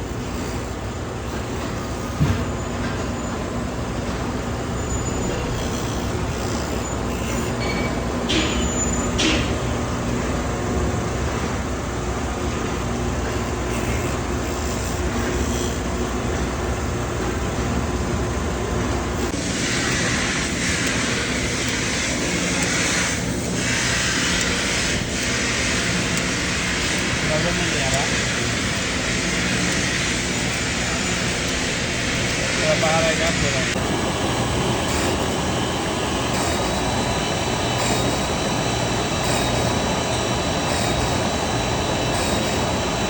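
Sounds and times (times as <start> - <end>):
machinery rumble and hum: 0.0 - 43.0
short high squeaks: 4.7 - 9.6.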